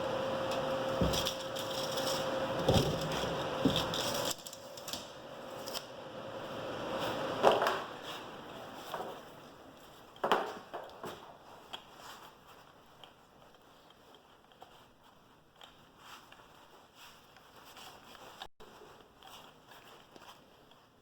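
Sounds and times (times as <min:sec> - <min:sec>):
steady mechanical hum: 0:00.0 - 0:21.0
workshop parts knocking and clattering: 0:00.9 - 0:05.0.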